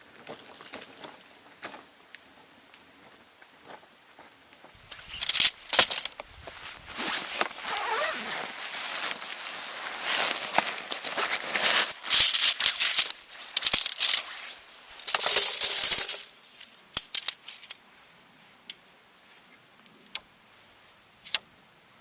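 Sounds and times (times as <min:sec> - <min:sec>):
rustling crinkling handling noise: 0:04.7 - 0:17.8.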